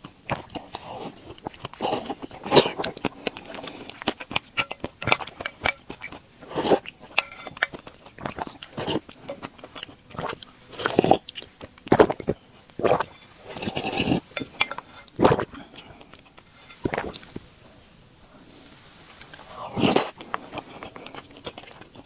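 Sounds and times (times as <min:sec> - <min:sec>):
person chewing: 0:00.0 - 0:17.4, 0:19.2 - 0:22.0
wet mouth noises: 0:00.0 - 0:17.4, 0:19.2 - 0:22.0.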